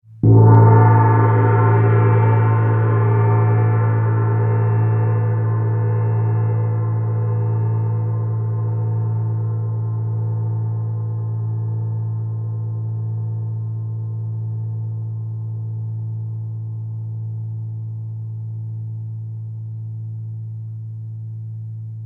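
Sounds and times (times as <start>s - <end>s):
gong ringing: 0.2s - 10.1s.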